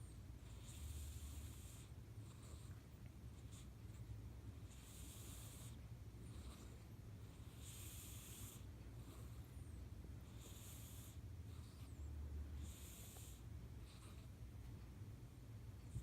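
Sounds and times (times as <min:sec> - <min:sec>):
cat snoring: 0:00.0 - 0:02.8, 0:04.6 - 0:09.6, 0:10.2 - 0:14.3.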